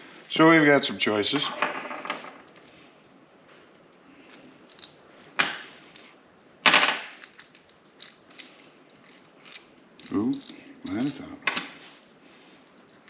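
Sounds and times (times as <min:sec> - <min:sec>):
metal hardware clinking: 0:06.7 - 0:11.6.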